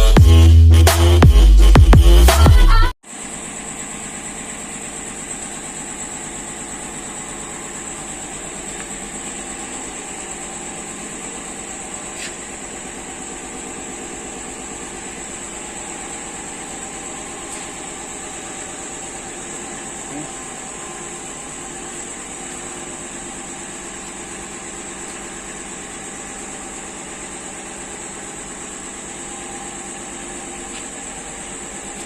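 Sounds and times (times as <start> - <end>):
electronic music: 0.0 - 2.9
high-pitched whine: 0.0 - 32.0
factory machinery hum: 3.1 - 32.0.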